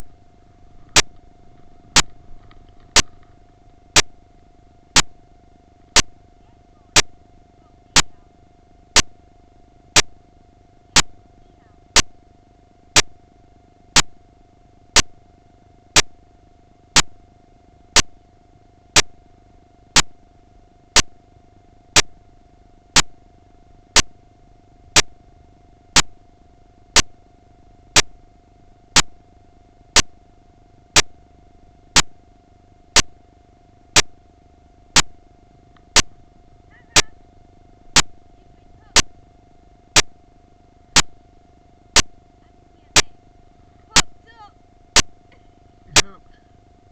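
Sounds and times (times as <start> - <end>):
faint steady hum: 0.0 - 46.9
sharp clicks: 0.9 - 1.2, 2.0 - 3.3, 4.0 - 4.2, 5.0 - 5.2, 5.9 - 6.2, 7.0 - 7.2, 9.0 - 9.2, 10.0 - 10.2, 11.0 - 11.2, 12.0 - 12.2, 13.0 - 13.2, 14.0 - 14.2, 15.0 - 15.2, 16.0 - 16.2, 17.0 - 17.2, 18.0 - 18.2, 19.0 - 19.2, 20.0 - 20.2, 21.0 - 21.2, 22.0 - 22.2, 23.0 - 23.2, 24.0 - 24.2, 25.0 - 25.2, 26.0 - 26.2, 27.0 - 27.2, 28.0 - 28.2, 29.0 - 29.2, 30.0 - 30.2, 31.0 - 31.2, 32.0 - 32.2, 33.0 - 33.2, 34.0 - 34.2, 35.0 - 35.2, 35.8 - 36.2, 38.0 - 38.2, 39.0 - 39.2, 40.0 - 40.2, 41.0 - 41.2, 42.0 - 42.2, 43.0 - 43.2, 44.0 - 44.2, 45.0 - 45.2, 45.9 - 46.2.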